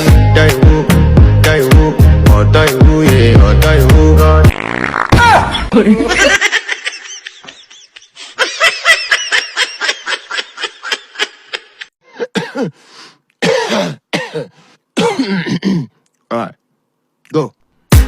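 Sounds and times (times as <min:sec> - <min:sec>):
person laughing: 0:05.4 - 0:11.9
person coughing: 0:12.1 - 0:12.8, 0:13.4 - 0:16.0.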